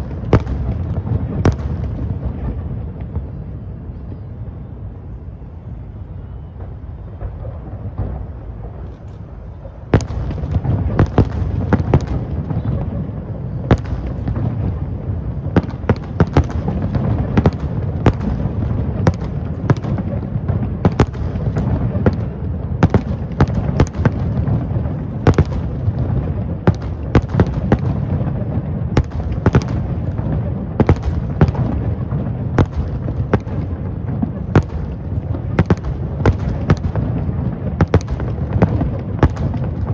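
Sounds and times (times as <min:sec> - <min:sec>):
fireworks bangs and cracks: 0:00.0 - 0:03.6, 0:06.6 - 0:39.9
low rumble of fireworks: 0:00.0 - 0:39.9.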